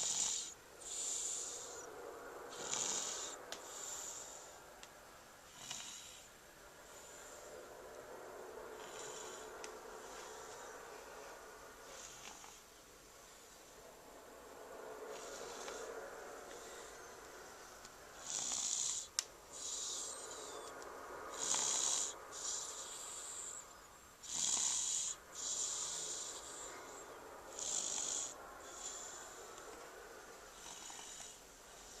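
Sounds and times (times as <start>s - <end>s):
baby snoring: 0.0s - 1.9s, 2.5s - 4.6s, 5.5s - 6.3s, 8.8s - 12.7s, 15.1s - 17.1s, 18.2s - 20.7s, 21.3s - 23.6s, 24.2s - 29.6s, 30.5s - 32.0s.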